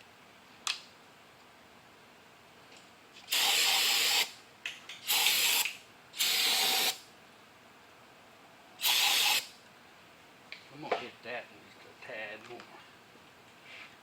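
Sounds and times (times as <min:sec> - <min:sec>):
pressurized spray hissing: 0:03.3 - 0:04.3, 0:05.1 - 0:07.0, 0:08.8 - 0:09.5.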